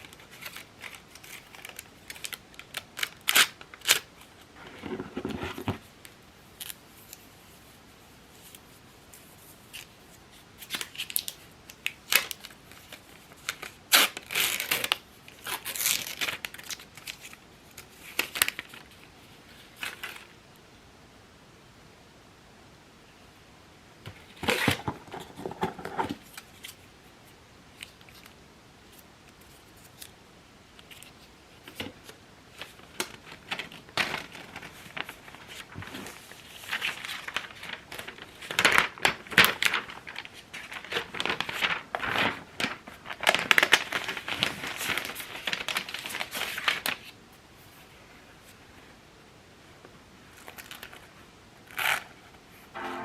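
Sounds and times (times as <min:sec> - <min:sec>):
packaging crinkling and tearing: 0:00.0 - 0:05.9, 0:10.6 - 0:19.0, 0:24.4 - 0:26.8, 0:31.7 - 0:47.2, 0:50.3 - 0:51.1.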